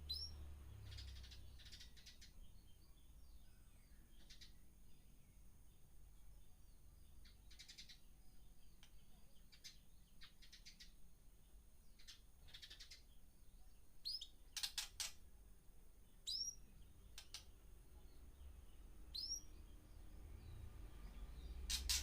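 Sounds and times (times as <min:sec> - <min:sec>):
sharp downward bird calls: 0:00.0 - 0:02.4, 0:19.2 - 0:19.6
birds chirping: 0:00.0 - 0:15.2, 0:15.9 - 0:22.0.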